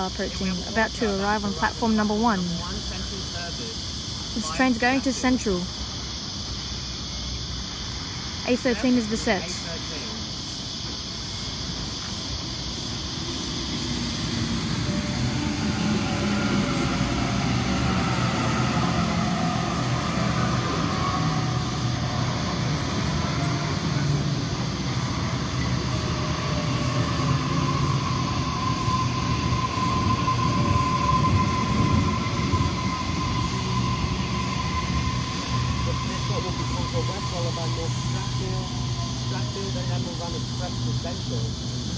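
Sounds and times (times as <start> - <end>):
electric train motors whining: 0.0 - 41.9
wheels rumbling on rails: 10.8 - 41.9
steady high tone: 13.0 - 41.5.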